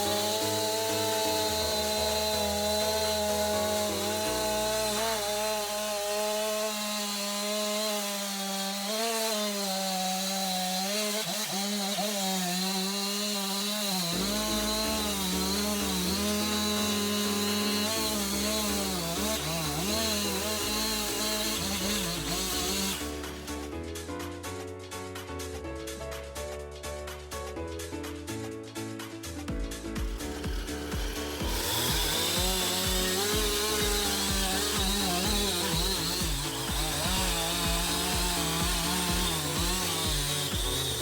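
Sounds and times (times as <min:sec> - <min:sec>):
background music with bass line: 0:00.0 - 0:06.5, 0:14.2 - 0:41.0
chainsaw cutting log: 0:00.0 - 0:25.6, 0:28.9 - 0:41.0.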